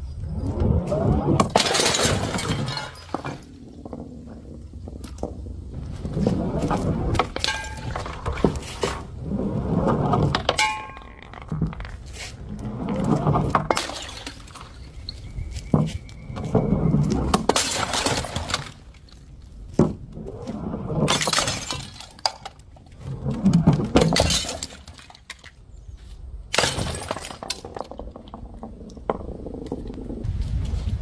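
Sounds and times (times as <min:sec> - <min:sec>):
glass bottles shattering: 0:01.5 - 0:03.6, 0:07.3 - 0:08.4, 0:10.5 - 0:11.2, 0:13.7 - 0:14.8, 0:17.5 - 0:18.8, 0:21.1 - 0:22.6, 0:24.0 - 0:25.4, 0:26.5 - 0:27.9.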